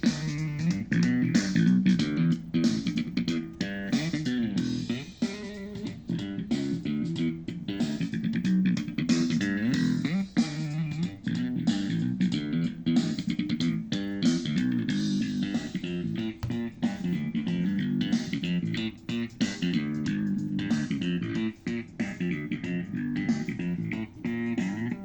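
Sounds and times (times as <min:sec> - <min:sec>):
plucked guitar and bass music: 0:00.0 - 0:25.0.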